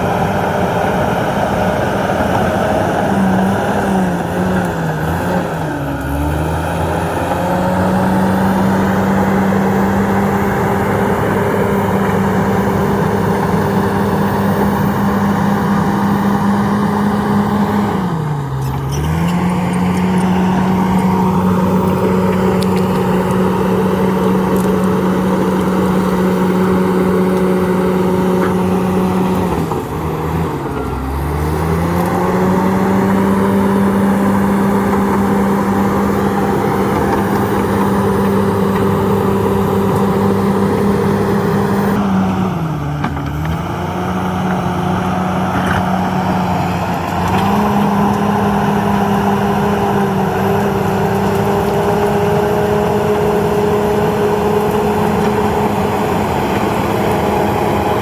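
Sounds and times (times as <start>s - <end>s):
bulldozer diesel engine running: 0.0s - 58.0s.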